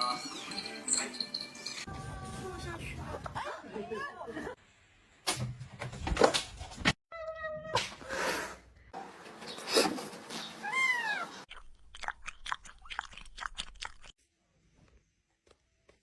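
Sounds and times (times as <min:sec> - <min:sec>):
cat meowing: 0:10.6 - 0:11.4.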